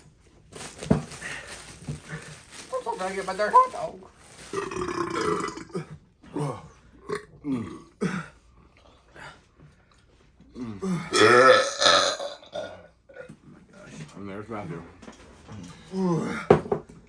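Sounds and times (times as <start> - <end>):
person burping: 4.5 - 8.4, 10.6 - 13.3.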